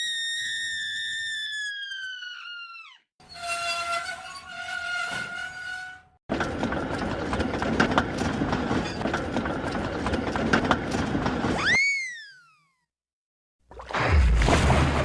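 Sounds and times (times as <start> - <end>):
steam train clattering on rails: 6.3 - 11.4.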